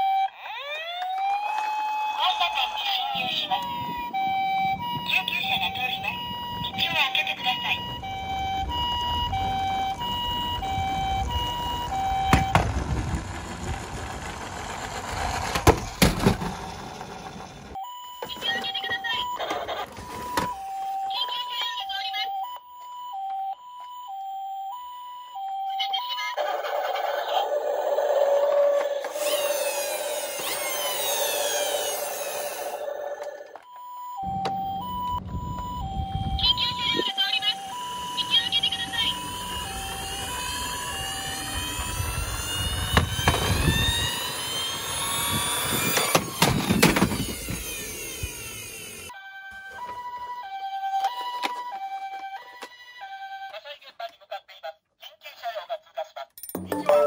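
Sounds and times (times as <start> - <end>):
toy two-tone siren: 0.0 - 54.1, 56.6 - 57.0.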